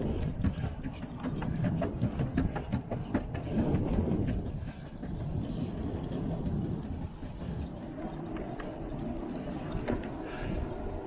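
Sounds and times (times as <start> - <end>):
skateboard clacks and knocks: 0.0 - 7.3
skateboard rolling on pavement: 0.0 - 10.8.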